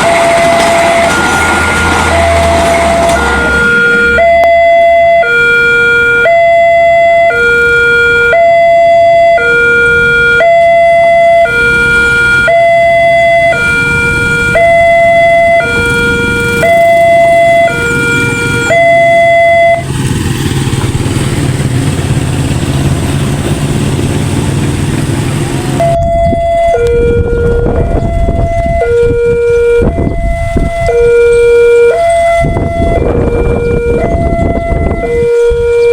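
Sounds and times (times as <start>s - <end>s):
two-tone crossing alarm: 0.0s - 23.0s, 25.8s - 35.9s
steady rumbling noise: 19.3s - 35.8s.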